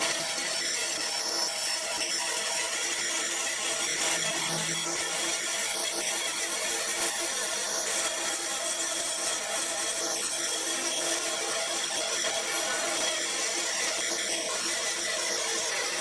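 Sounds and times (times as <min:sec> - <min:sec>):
woodworking power tool running: 0:00.0 - 0:06.9.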